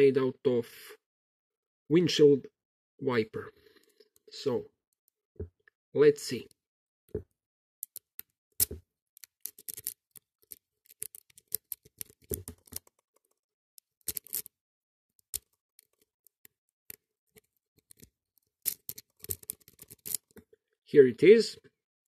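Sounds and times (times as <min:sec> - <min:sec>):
rake scraping in padlock: 0:14.1 - 0:14.5.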